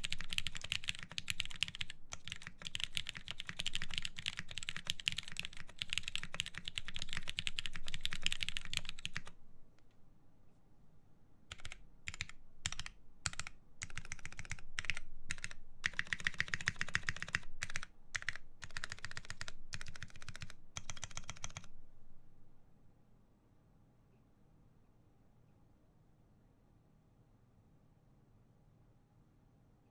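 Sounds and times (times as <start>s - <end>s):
mechanical keyboard typing: 0.0s - 9.4s, 11.5s - 21.7s.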